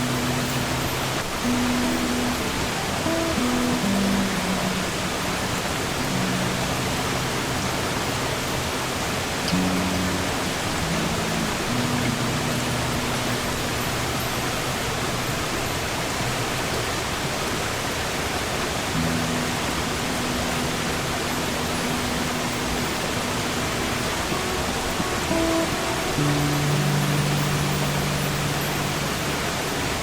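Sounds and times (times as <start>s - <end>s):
soft acoustic guitar notes: 0.0s - 15.4s, 19.0s - 30.0s
sea surf rushing: 0.0s - 30.0s.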